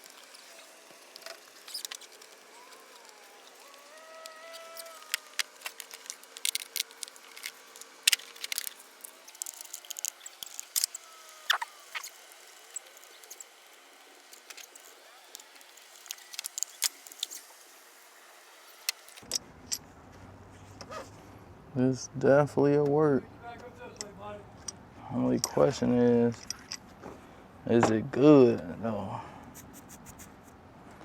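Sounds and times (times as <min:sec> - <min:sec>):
metal and plastic parts clicking: 0:00.1 - 0:12.1, 0:26.3 - 0:26.8
faint thin squeaks: 0:00.5 - 0:07.6, 0:09.4 - 0:13.5.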